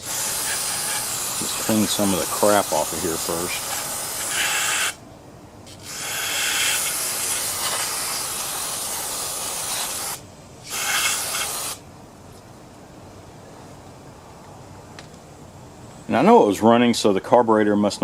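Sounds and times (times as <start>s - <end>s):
spray can hissing: 0.0s - 5.0s, 5.7s - 11.8s.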